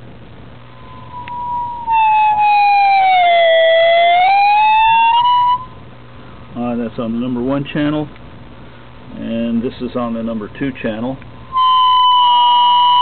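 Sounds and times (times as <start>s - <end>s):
amplifier whistle: 0.7s - 5.8s, 11.4s - 13.0s.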